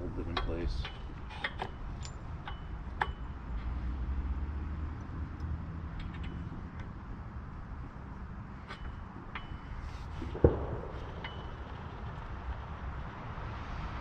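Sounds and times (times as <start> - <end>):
small metal clicks: 5.0 - 7.0
steady low rumble: 6.5 - 14.0.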